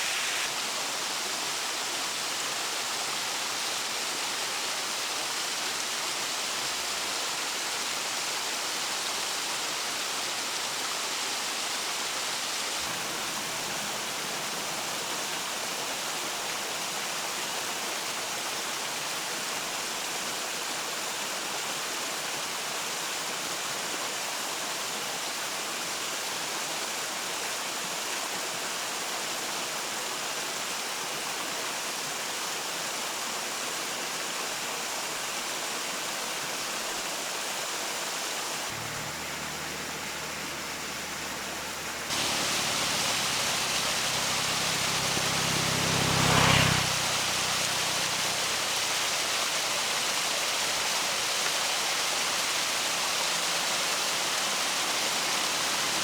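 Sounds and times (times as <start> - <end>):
water hissing: 0.0 - 0.6, 38.7 - 50.2, 52.6 - 56.0.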